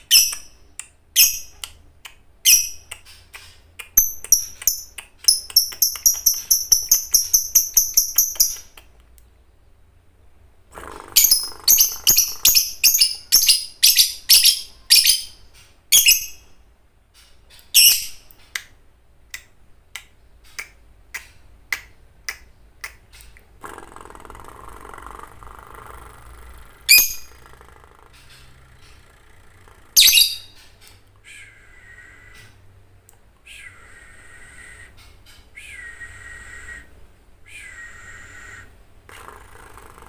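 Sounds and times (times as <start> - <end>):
lovebird shrill chirps: 4.0 - 8.7, 11.2 - 16.5, 17.7 - 18.2, 26.9 - 27.3, 30.0 - 30.6.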